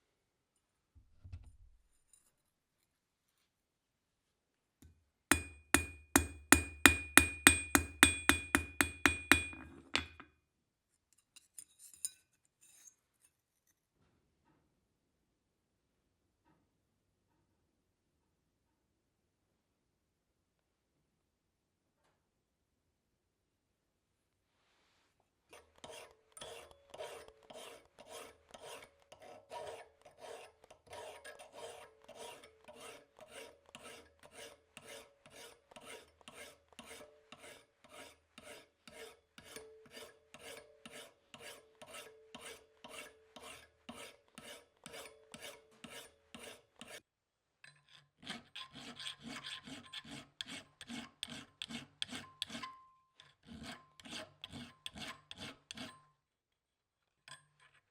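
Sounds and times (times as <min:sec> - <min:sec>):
file rasping on steel blade: 0:05.3 - 0:10.2, 0:25.5 - 0:47.0, 0:47.9 - 0:56.1.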